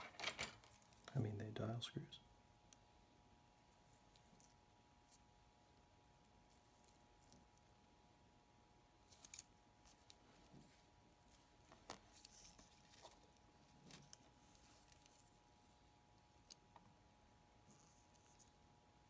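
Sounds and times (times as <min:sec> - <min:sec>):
metal tools clicking and scraping: 0:00.0 - 0:01.2
faint steady hum: 0:00.0 - 0:19.0.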